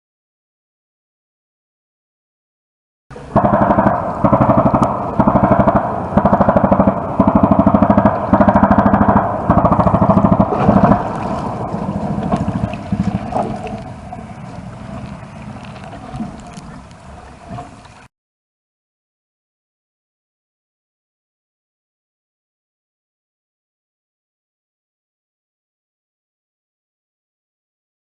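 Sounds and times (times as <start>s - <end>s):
low rumble: 3.1s - 18.1s
distant guns firing in bursts: 3.4s - 11.1s.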